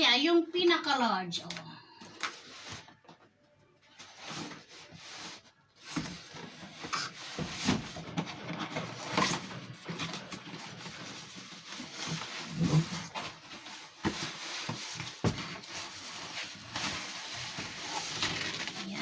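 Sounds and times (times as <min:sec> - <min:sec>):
cooking pot rubbing and scraping: 0:06.5 - 0:19.0.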